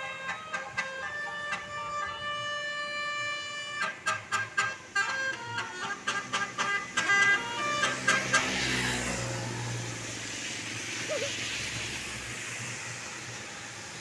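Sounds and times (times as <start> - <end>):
musical bus horn: 0.0 - 8.8
bus passing by: 0.0 - 14.0.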